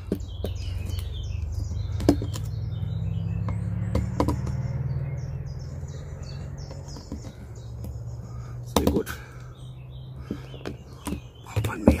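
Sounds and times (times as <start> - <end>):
small birds chirping: 0.0 - 12.0
sharp knocks: 3.4 - 4.6.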